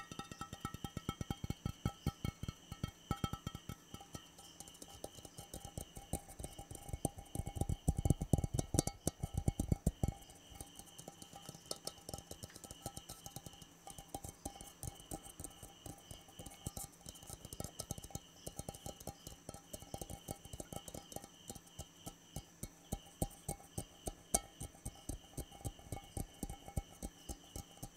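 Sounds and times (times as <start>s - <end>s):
fast tapping on hard object: 0.0s - 27.9s.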